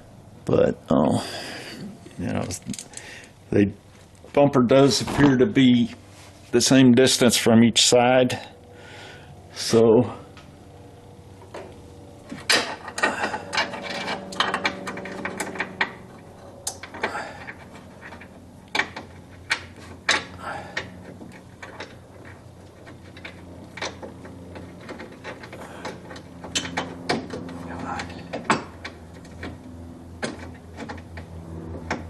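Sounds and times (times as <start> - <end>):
metal clinks and rattles: 12.4 - 20.4.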